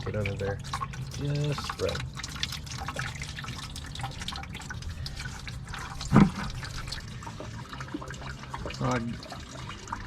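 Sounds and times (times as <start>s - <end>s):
coolant splashing into bucket: 0.0s - 10.0s.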